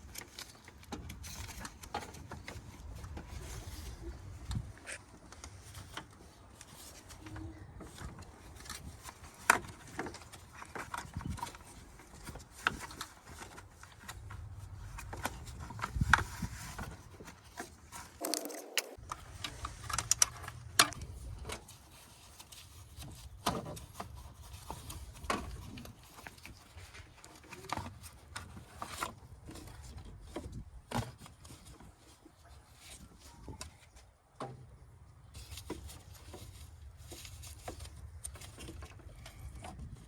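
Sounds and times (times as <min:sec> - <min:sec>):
hand tools and parts clinking: 0:04.6 - 0:30.6.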